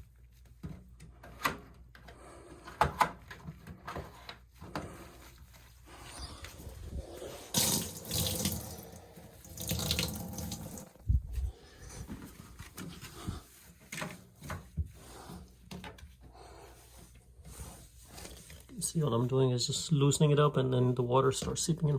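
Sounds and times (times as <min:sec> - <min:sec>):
water draining and splashing: 0:07.3 - 0:11.0.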